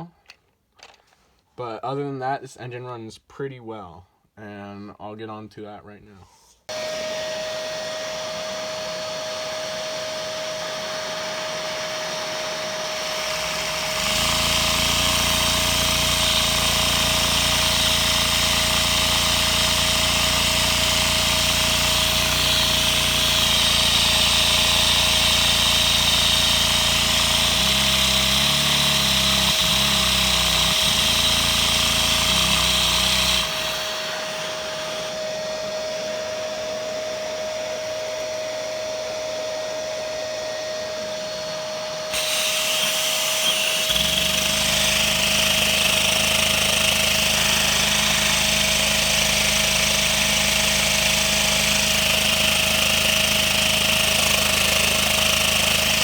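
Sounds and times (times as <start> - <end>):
toy engine whirring and whining: 11.2 - 35.2, 42.1 - 56.0.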